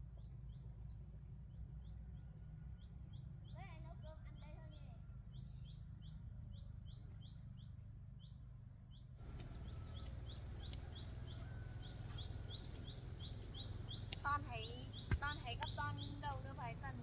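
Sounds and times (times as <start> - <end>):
low background rumble: 0.0 - 17.0
bird high rising chirp: 5.3 - 17.0.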